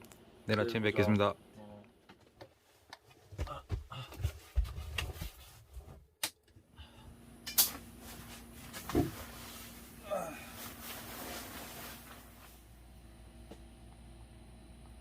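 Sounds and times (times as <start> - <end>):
low steady hum: 3.4 - 15.0.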